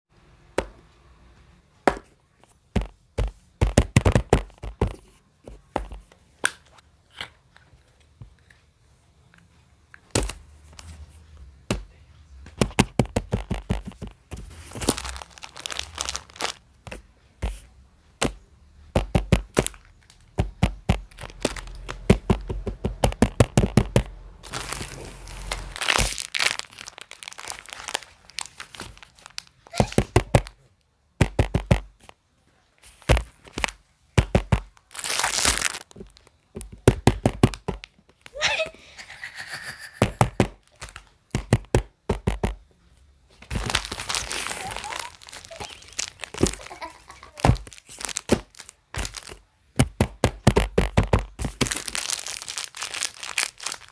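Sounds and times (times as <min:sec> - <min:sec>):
fidget toys tapping and clicking: 0:12.5 - 0:14.3, 0:18.2 - 0:24.2, 0:31.2 - 0:32.2, 0:40.0 - 0:42.6, 0:49.0 - 0:51.7
crinkling paper and plastic: 0:13.2 - 0:17.0, 0:19.2 - 0:22.6, 0:23.2 - 0:30.6, 0:31.8 - 0:33.8, 0:34.4 - 0:36.8, 0:43.3 - 0:50.0, 0:50.6 - 0:53.9.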